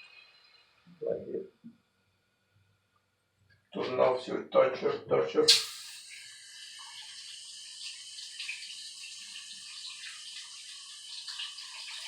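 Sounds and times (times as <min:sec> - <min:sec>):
water running from a tap: 0:05.5 - 0:12.0.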